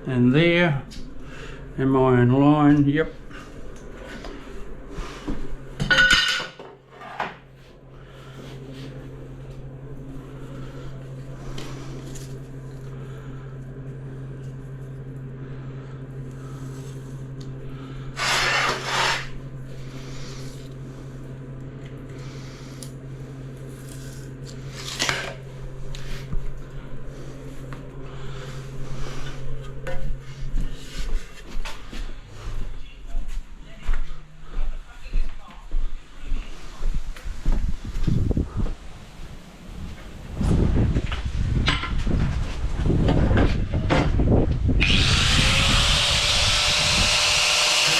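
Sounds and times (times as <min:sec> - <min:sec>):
steady low hum: 0:00.0 - 0:47.9
tile scraping: 0:18.2 - 0:19.3.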